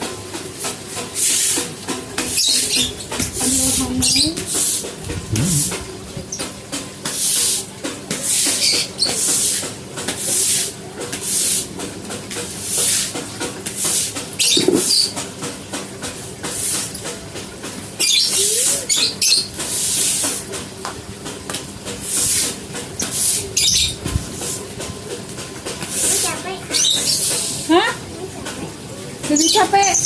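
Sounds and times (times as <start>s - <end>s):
stiff brush scrubbing: 2.6s - 6.3s, 25.8s - 27.6s.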